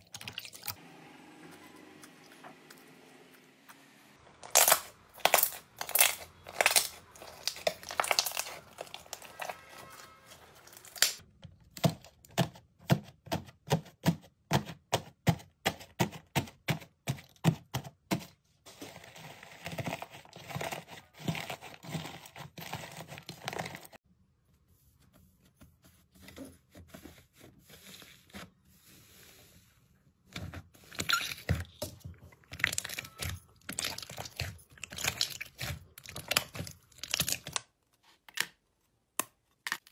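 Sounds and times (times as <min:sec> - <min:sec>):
slime squished by hand crackling: 0:04.5 - 0:09.4.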